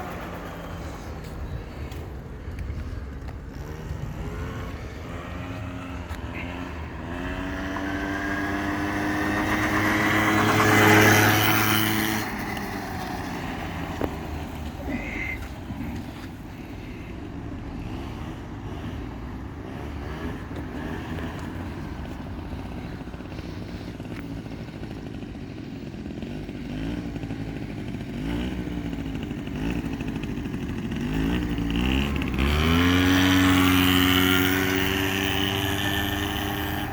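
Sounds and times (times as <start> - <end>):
quad engine revving: 0.0 - 36.9.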